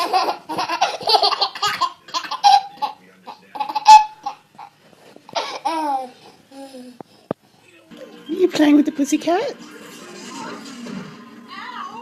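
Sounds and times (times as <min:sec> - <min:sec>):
baby laughing: 0:00.0 - 0:04.7, 0:05.3 - 0:06.2.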